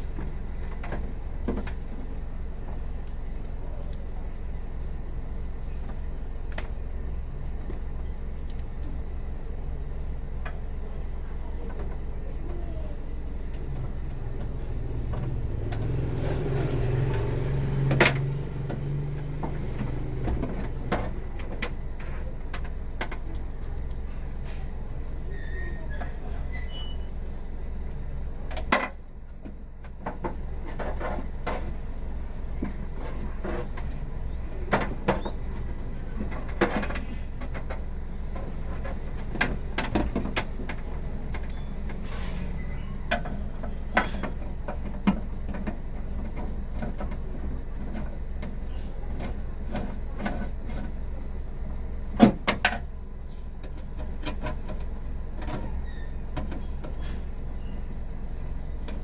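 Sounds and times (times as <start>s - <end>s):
steady low hum: 0.0s - 59.0s
clicks and knocks on car door: 52.2s - 52.9s.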